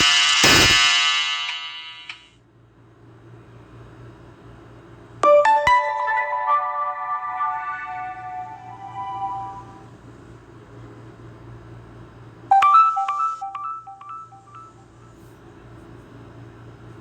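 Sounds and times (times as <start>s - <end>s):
low steady hum: 2.4s - 17.0s
bright electronic chime: 5.2s - 9.9s
ringtone melody on loudspeaker: 5.2s - 9.9s, 12.5s - 15.0s.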